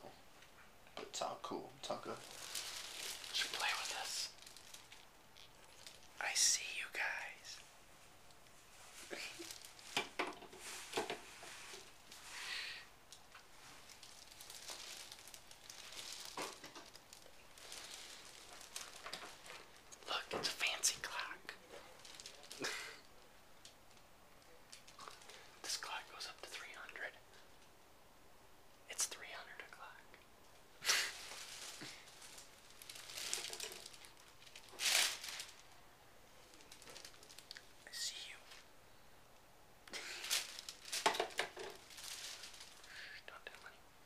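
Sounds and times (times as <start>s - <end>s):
rustling and crinkling: 0.2s - 27.7s, 28.9s - 38.7s, 39.9s - 43.8s
short breathy hiss: 30.8s - 32.1s.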